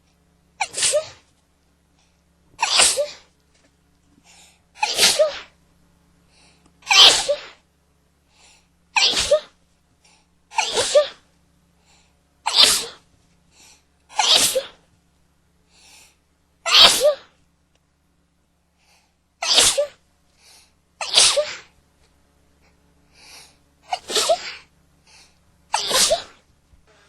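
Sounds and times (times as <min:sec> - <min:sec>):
person sneezing: 0:00.6 - 0:01.2, 0:02.6 - 0:03.3, 0:04.8 - 0:05.5, 0:06.8 - 0:07.6, 0:09.0 - 0:09.6, 0:10.5 - 0:11.2, 0:12.5 - 0:13.0, 0:14.1 - 0:14.8, 0:16.7 - 0:17.3, 0:19.4 - 0:20.0, 0:21.0 - 0:21.7, 0:23.9 - 0:24.7, 0:25.7 - 0:26.4.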